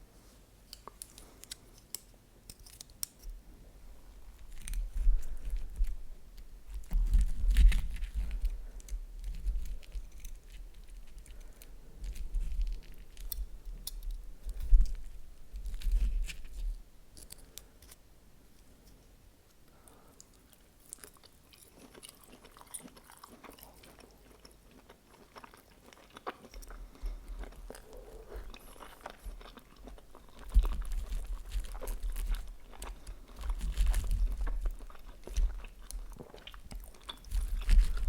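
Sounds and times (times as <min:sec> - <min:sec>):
crinkling: 0:04.1 - 0:18.0, 0:19.7 - 0:38.0.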